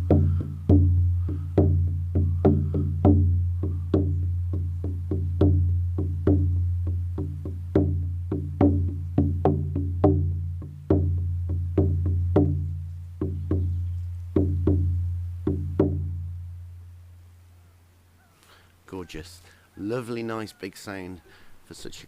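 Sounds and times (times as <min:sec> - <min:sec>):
frame drum struck with beater: 0:00.0 - 0:16.4.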